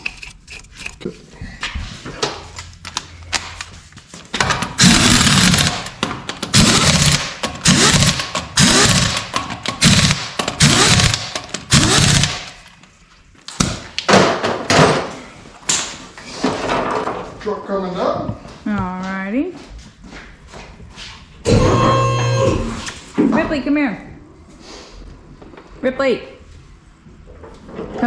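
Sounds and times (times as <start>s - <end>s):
impact wrench hammering: 4.4s - 12.6s.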